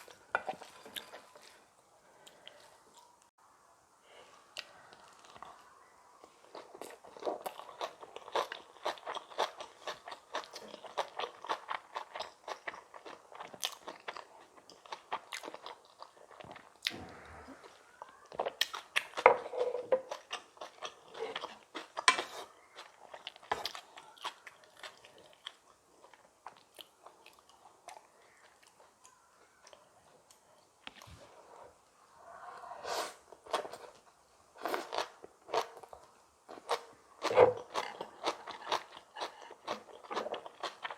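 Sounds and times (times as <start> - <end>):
wet crunching and chewing: 6.4 - 17.0, 18.0 - 29.9, 33.4 - 40.9.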